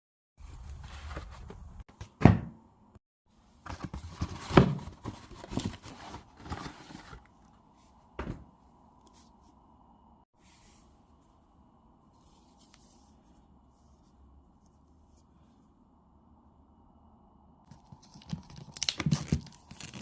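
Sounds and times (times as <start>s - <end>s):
packaging rustling and scraping: 3.7s - 7.4s.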